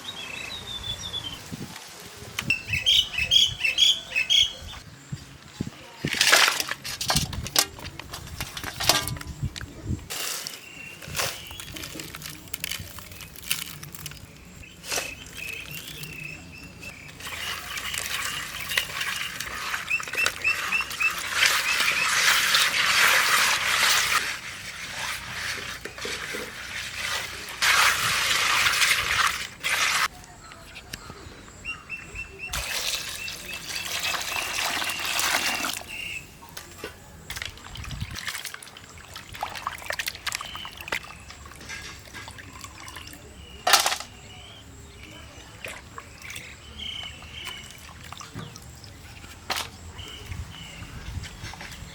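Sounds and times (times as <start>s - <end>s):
water pouring and splashing: 6.0s - 9.5s, 10.1s - 30.1s, 32.5s - 36.6s, 37.2s - 44.0s, 45.5s - 50.1s.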